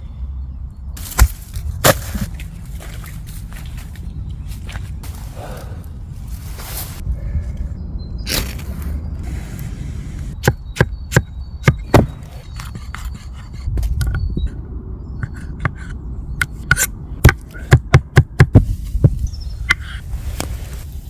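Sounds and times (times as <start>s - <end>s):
knife chopping on wooden board: 10.4s - 14.2s, 15.2s - 20.0s.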